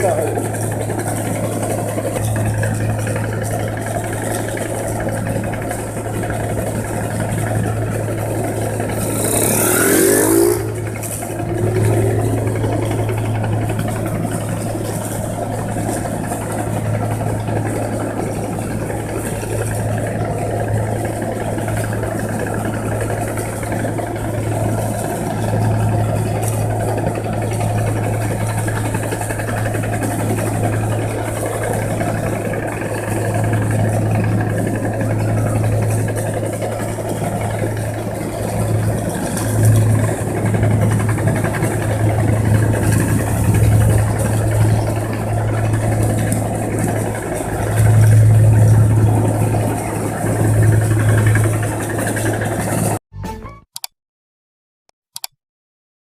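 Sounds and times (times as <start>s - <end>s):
combine harvester engine hum: 0.0s - 53.9s
rushing sweep: 8.9s - 13.1s.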